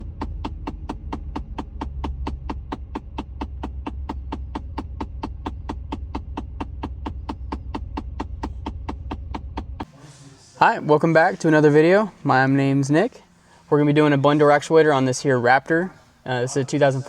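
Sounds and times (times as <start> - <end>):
rapid clicking behind dashboard: 0.0 - 9.9
steady low hum: 0.0 - 17.0.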